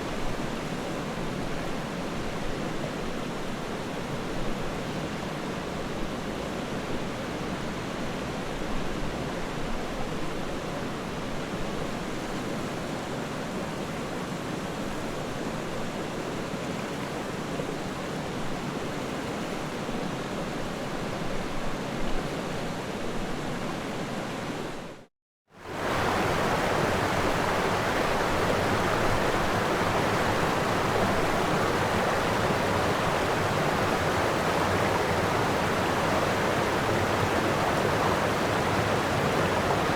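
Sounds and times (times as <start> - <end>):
floodwater rushing: 25.6 - 39.9.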